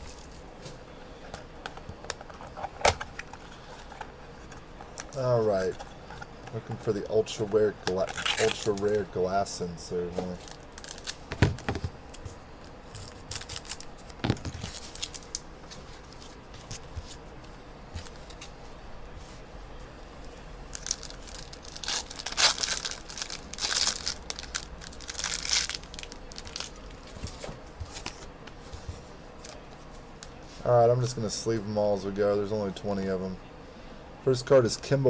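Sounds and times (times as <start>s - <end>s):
packaging tearing and crinkling: 7.8s - 9.0s, 10.2s - 11.7s, 12.9s - 15.4s, 20.7s - 28.2s.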